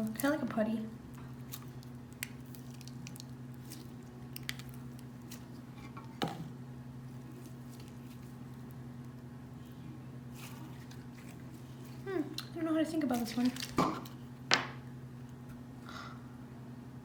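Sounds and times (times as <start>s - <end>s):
slime squelching: 0.0s - 5.8s, 7.1s - 8.8s
steady low hum: 0.0s - 17.0s.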